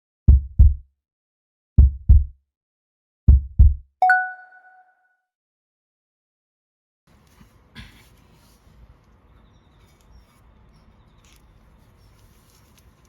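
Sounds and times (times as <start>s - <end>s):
bell-like ding: 4.0s - 4.8s.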